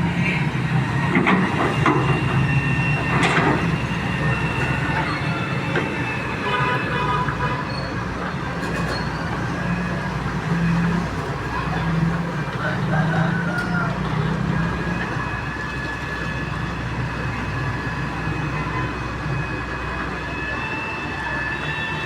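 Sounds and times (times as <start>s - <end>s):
excavator diesel engine: 0.0s - 22.0s
high metallic squealing: 0.1s - 6.9s.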